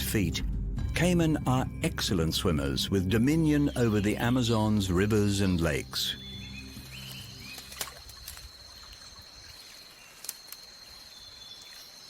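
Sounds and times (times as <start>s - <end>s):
low rumble: 0.0s - 5.1s.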